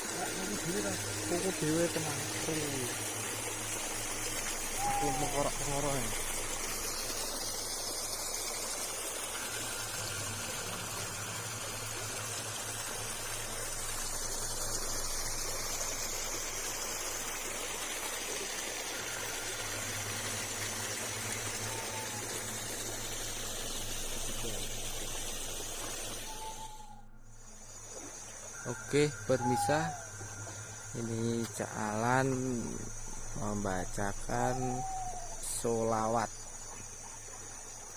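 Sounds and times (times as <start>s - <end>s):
low hum: 18.8s - 35.7s.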